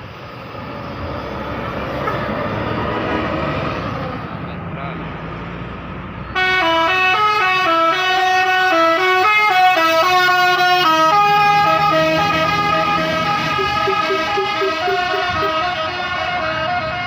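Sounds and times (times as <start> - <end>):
musical bus horn melody: 6.3 - 17.0.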